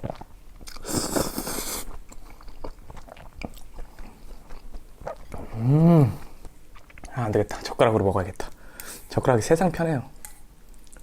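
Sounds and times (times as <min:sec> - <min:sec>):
wet chewing clicks: 0:00.0 - 0:05.4
loud bite or slurp: 0:00.1 - 0:02.0
person humming: 0:05.6 - 0:06.3.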